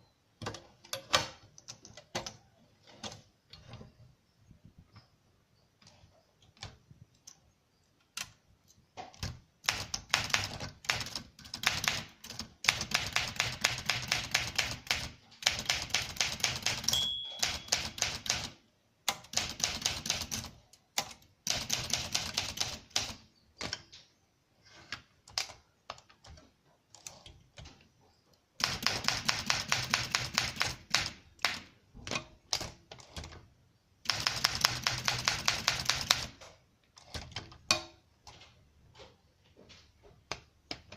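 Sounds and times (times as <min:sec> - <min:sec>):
typewriter keystrokes: 0:09.1 - 0:23.8, 0:28.6 - 0:31.7, 0:34.1 - 0:36.4
typewriter bell ringing: 0:16.8 - 0:18.3.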